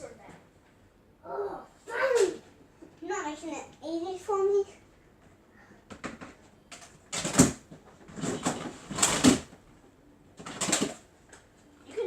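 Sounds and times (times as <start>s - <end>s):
rustling and bumping handling noise: 5.9s - 11.7s.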